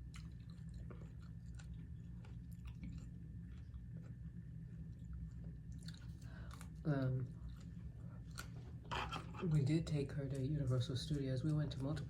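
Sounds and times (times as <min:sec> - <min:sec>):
person chewing salad: 0:00.0 - 0:09.4
low steady background hum: 0:00.0 - 0:12.0.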